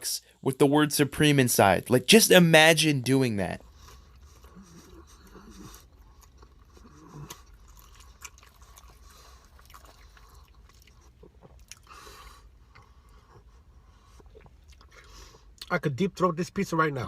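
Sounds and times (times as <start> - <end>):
person chewing food: 3.6 - 15.7.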